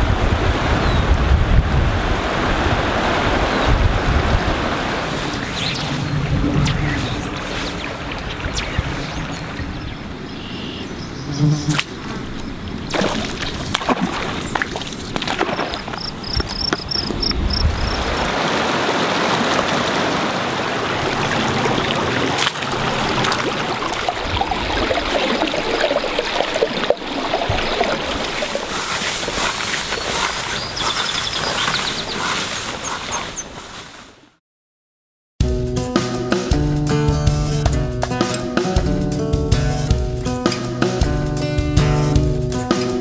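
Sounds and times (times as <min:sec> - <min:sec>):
stream water rushing: 0:01.8 - 0:10.5, 0:11.8 - 0:16.1, 0:17.9 - 0:33.4
high chirps: 0:05.1 - 0:09.4.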